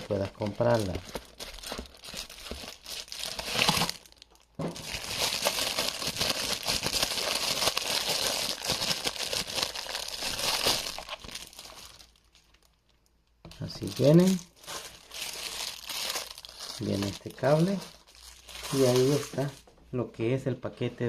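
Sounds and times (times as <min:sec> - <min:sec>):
packaging crinkling and rustling: 0:00.0 - 0:19.7.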